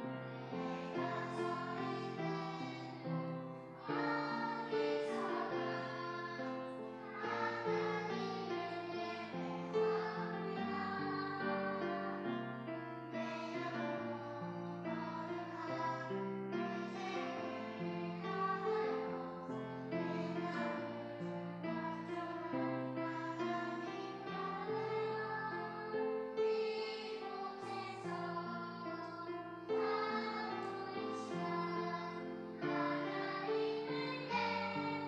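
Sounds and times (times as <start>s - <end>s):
children singing in unison: 0.0s - 35.0s
piano chords: 0.0s - 35.0s.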